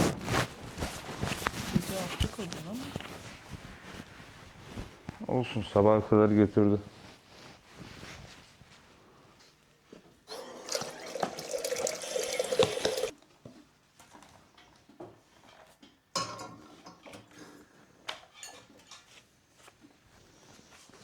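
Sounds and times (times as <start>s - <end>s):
tap water running into container: 10.3s - 13.1s.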